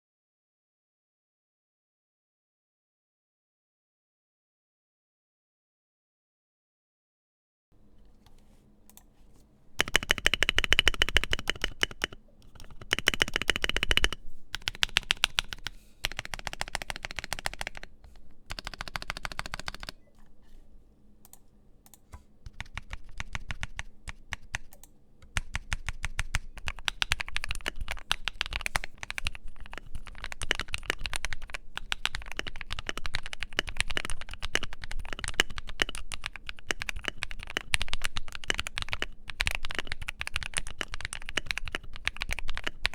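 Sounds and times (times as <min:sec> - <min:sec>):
fast typing on mechanical keyboard: 0:09.8 - 0:20.0, 0:22.5 - 0:42.9.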